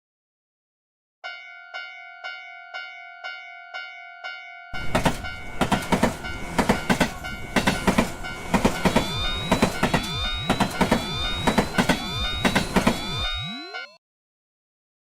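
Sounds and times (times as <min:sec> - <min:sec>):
many overlapping crossing bells: 0:01.2 - 0:14.0
railroad crossing bell clanging: 0:01.2 - 0:14.0
train clatter: 0:04.8 - 0:13.4.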